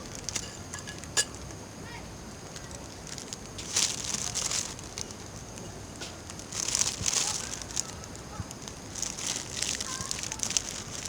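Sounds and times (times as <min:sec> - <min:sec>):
campfire crackling: 0:02.2 - 0:11.0.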